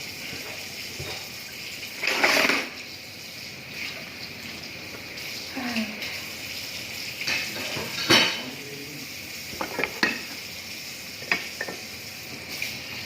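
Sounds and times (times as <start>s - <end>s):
dishes and cutlery clinking: 7.2s - 8.6s, 9.6s - 10.4s.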